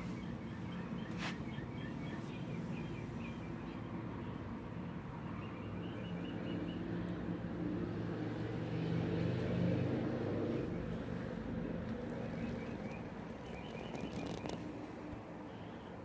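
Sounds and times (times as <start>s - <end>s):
birds chirping: 0.0s - 4.4s, 12.2s - 14.7s.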